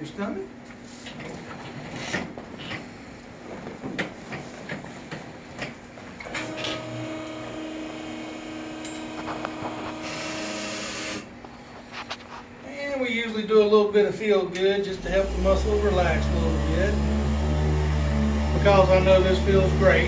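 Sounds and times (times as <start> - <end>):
machine hum: 5.9 - 12.8, 14.9 - 20.0.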